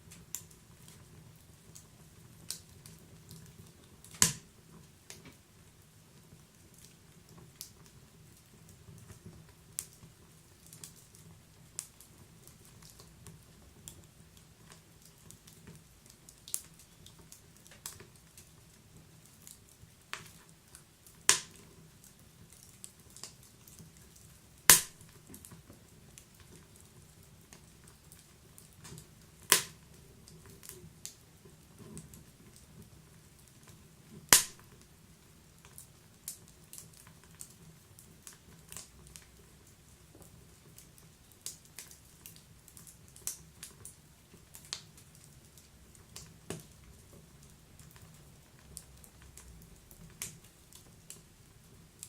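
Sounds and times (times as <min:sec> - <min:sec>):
soft low hiss: 0:00.0 - 0:52.0
wood fire crackling and popping: 0:00.0 - 0:52.0
loud wood snaps: 0:04.1 - 0:04.5, 0:21.3 - 0:21.6, 0:24.7 - 0:25.0, 0:29.5 - 0:29.8, 0:34.3 - 0:34.7.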